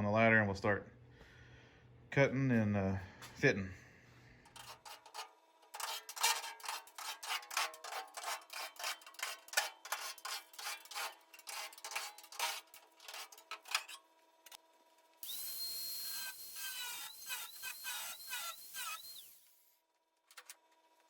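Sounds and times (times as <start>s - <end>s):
hand tool rasping on sheet metal: 4.5s - 14.0s.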